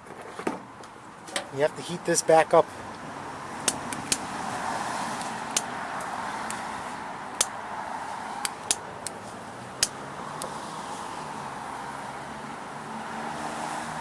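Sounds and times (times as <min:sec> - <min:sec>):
sharp clicks and taps: 0:03.6 - 0:04.2, 0:05.2 - 0:06.6, 0:08.4 - 0:09.2.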